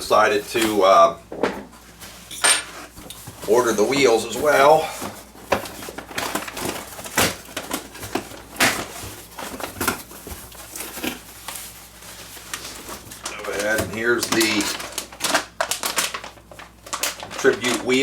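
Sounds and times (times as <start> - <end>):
packaging crinkling and clicking: 5.4 - 18.0.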